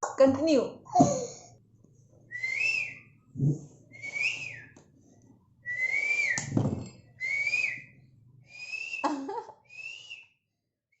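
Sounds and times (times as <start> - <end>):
person whistling bird-like call: 2.4 - 3.0, 5.7 - 6.5, 7.2 - 7.9, 8.5 - 9.1, 9.7 - 10.4.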